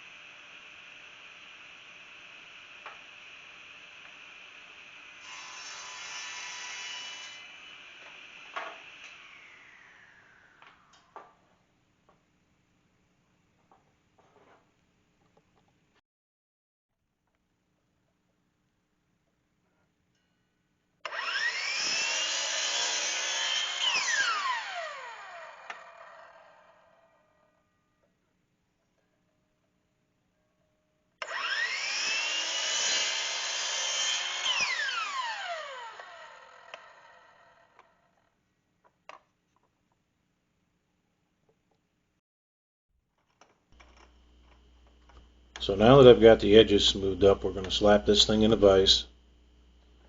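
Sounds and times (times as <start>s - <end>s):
power saw cutting wood: 0.0s - 11.0s, 21.1s - 27.2s, 31.2s - 38.3s
saw blade winding down: 0.0s - 11.1s, 21.0s - 27.5s, 31.2s - 38.3s.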